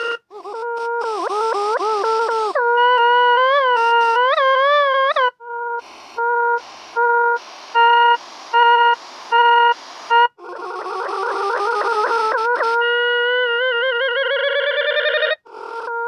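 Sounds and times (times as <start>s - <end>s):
pitched tone beeping: 0.0s - 0.3s, 6.2s - 15.4s.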